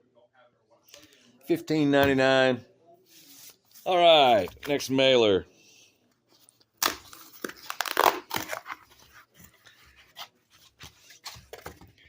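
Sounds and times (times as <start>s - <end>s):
cardboard ripping and crinkling: 6.8s - 11.7s.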